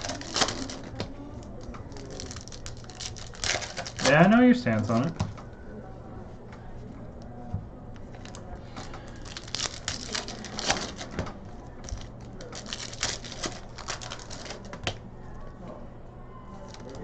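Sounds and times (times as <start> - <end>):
foil packs crinkling and ripping: 0.0 - 1.1, 1.9 - 4.3, 9.0 - 11.2, 11.8 - 14.9.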